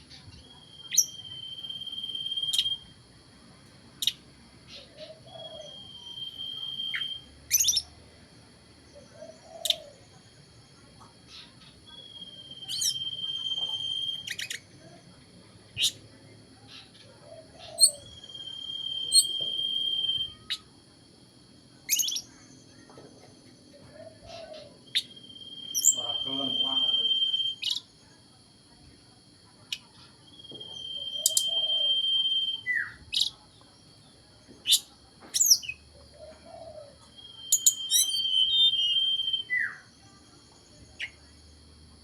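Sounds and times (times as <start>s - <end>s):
songbird whistling and chirping: 0.2s - 2.9s, 4.8s - 7.9s, 9.2s - 10.0s, 11.3s - 14.7s, 15.8s - 16.0s, 17.4s - 20.7s, 21.9s - 22.8s, 24.1s - 27.9s, 29.7s - 33.4s, 34.6s - 39.9s.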